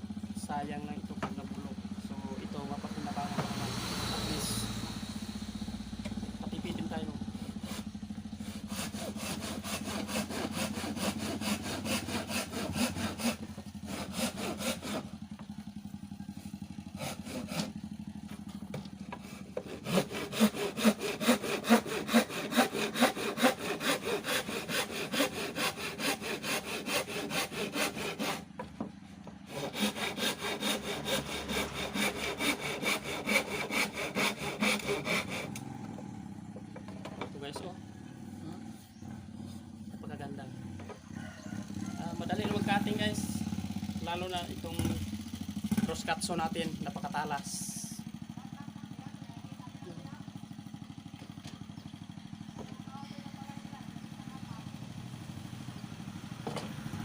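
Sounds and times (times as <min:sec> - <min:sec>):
hand saw cutting wood: 0:00.4 - 0:36.1, 0:40.0 - 0:48.0, 0:56.1 - 0:57.0.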